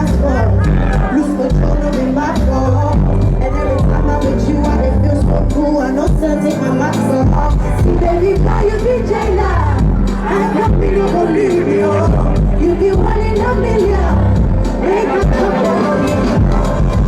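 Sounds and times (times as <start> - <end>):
bass line: 0.0 - 17.0
person singing: 0.0 - 17.0.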